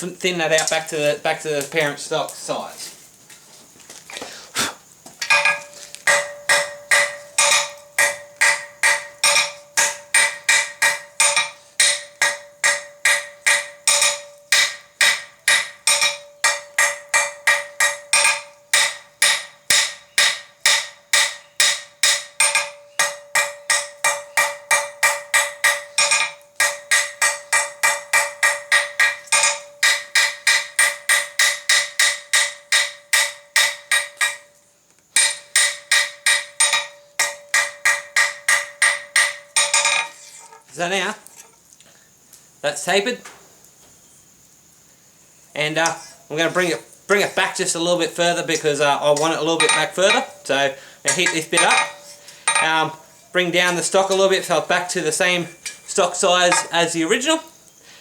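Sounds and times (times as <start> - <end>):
anvil ringing: 5.3 - 34.6, 35.2 - 40.4, 49.0 - 57.4
hammer striking metal on anvil: 5.3 - 34.6, 35.2 - 40.3, 49.2 - 50.5, 51.1 - 53.0, 53.7 - 57.0.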